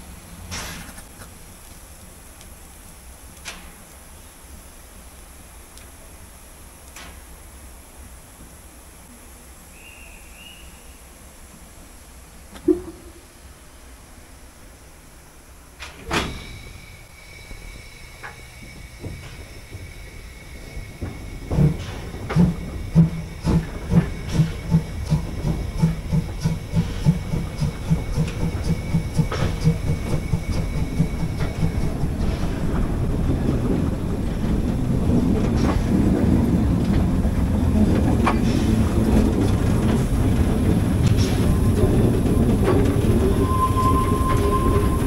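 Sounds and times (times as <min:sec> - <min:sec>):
train rumble: 0:00.0 - 0:45.0
steam locomotive chuffing: 0:16.3 - 0:45.0.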